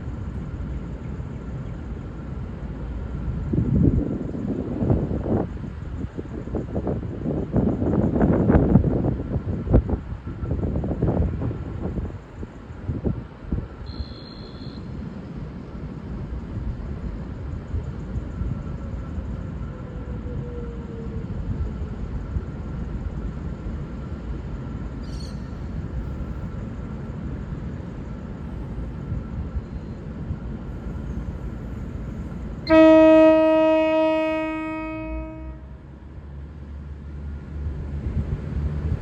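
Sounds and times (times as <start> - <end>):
train rumbling: 0.0 - 39.0
train horn blast: 13.9 - 14.9, 32.6 - 35.9.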